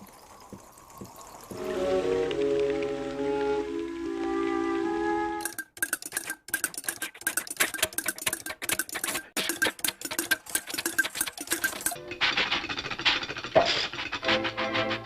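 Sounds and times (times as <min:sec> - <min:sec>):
cartoon clattering taps: 0:05.4 - 0:12.0.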